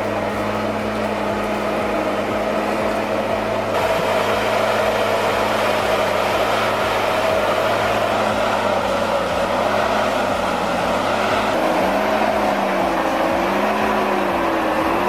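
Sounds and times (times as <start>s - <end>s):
diesel engine running under load: 0.0s - 15.0s.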